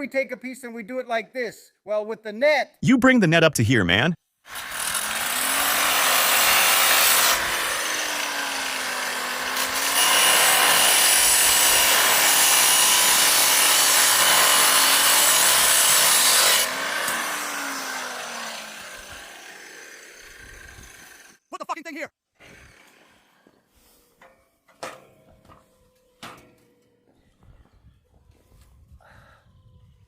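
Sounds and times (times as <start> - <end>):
angle grinder cutting steel: 4.6 - 21.4.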